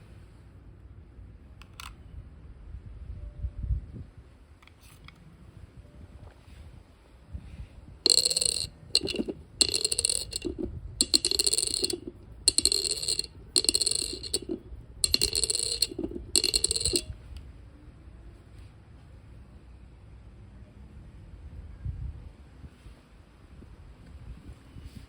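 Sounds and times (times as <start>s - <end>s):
coin dropping and ringing: 8.1s - 17.1s.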